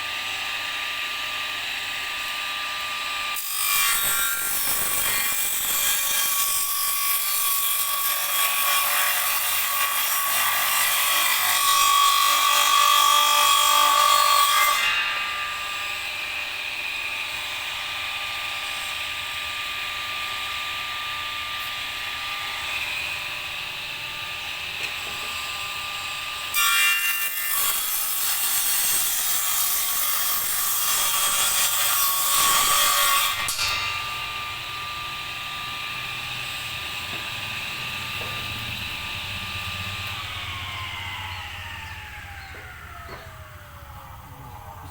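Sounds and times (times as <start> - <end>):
electric power saw cutting wood: 0.0 - 44.9.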